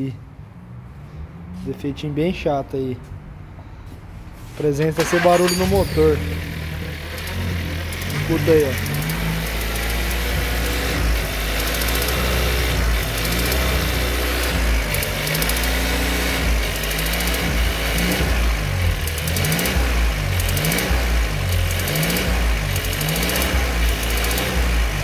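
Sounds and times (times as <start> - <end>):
car engine idling: 3.6 - 25.0
fast rhythmic engine ticking: 5.9 - 25.0.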